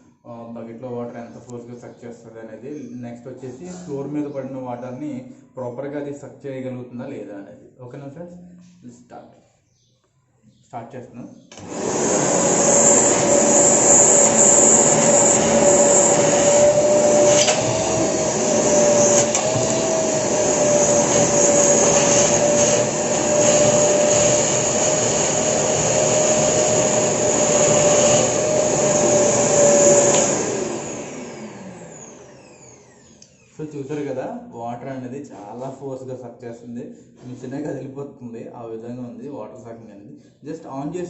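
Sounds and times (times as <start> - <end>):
wet and dry vacuum motor whine: 11.5 - 33.6
water sucked through hose: 11.6 - 31.8.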